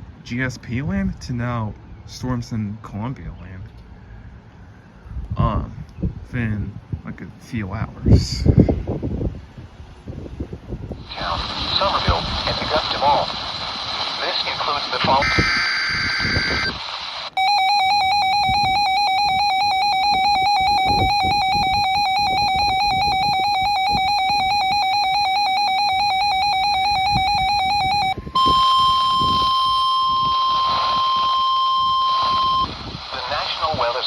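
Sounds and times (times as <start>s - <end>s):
fast-warbling electronic alarm tone: 15.2s - 16.8s, 17.4s - 33.0s
steady single-pitch alarm tone: 15.2s - 16.8s, 17.4s - 33.0s.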